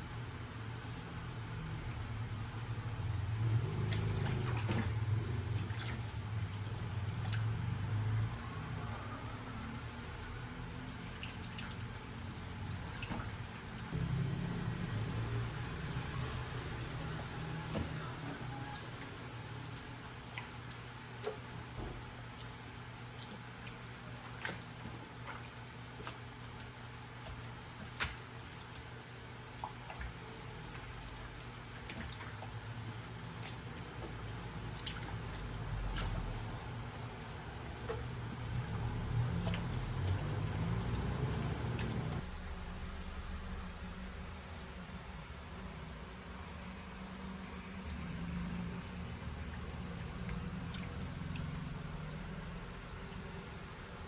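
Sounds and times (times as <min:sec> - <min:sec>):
wet fabric squishing: 0:03.3 - 0:42.5, 0:46.4 - 0:54.0
water drips: 0:03.3 - 0:43.6, 0:46.3 - 0:54.0
water running from a tap: 0:27.3 - 0:42.2.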